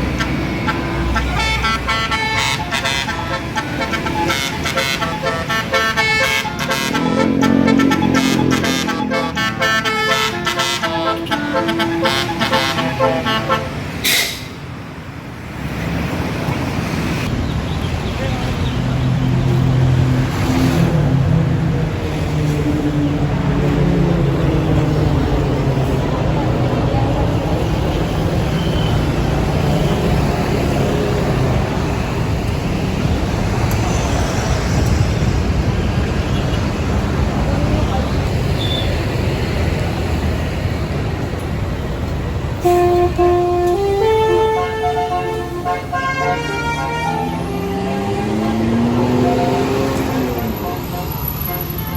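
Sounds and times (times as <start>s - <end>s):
multi-tone bus horn melody: 0.0s - 14.6s, 42.6s - 51.9s
diesel bus engine rumbling: 0.0s - 51.9s
road traffic: 0.0s - 51.9s
short hiss: 14.0s - 14.6s.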